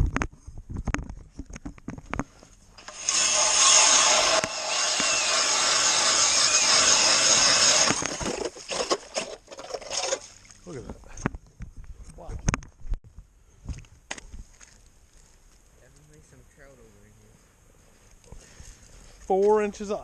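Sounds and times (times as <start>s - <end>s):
drill boring through ice: 2.8s - 10.3s.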